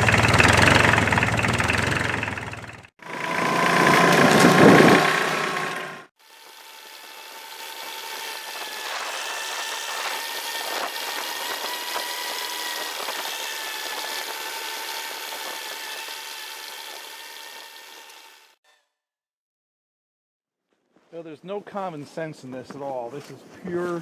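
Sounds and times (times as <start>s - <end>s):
diesel tractor engine running: 0.0s - 6.1s.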